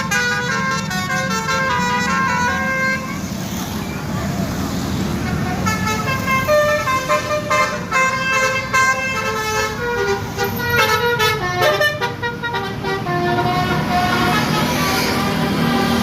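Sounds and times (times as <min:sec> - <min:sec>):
musical bus horns playing a tune: 0:00.0 - 0:03.2, 0:05.2 - 0:16.0
low rumble of bus engines: 0:00.0 - 0:16.0.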